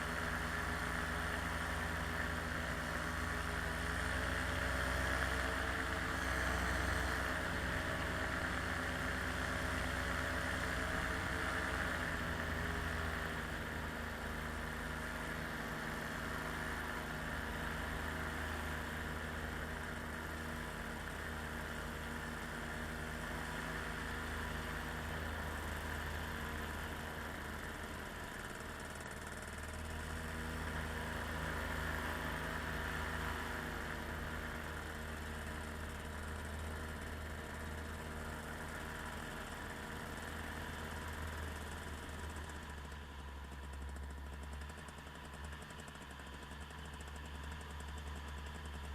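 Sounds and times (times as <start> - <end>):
small aircraft engine droning: 0.0 - 48.9.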